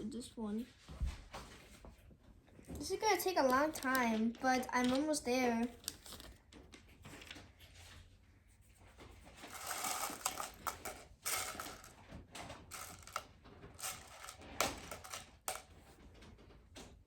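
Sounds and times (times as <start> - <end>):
plastic pieces clicking: 9.4 - 15.8.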